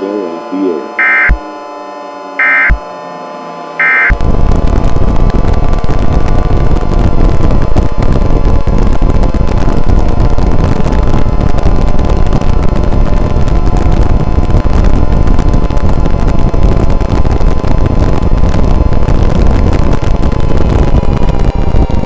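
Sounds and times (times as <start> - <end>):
faint steady tones: 0.0 - 14.1
distorted rumbling noise: 0.0 - 22.0.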